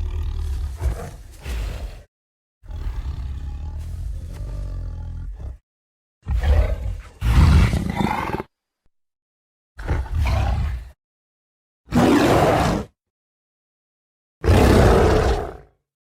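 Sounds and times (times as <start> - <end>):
monster growling roar: 0.0 - 5.6, 6.2 - 8.5, 11.9 - 12.9, 14.4 - 15.7.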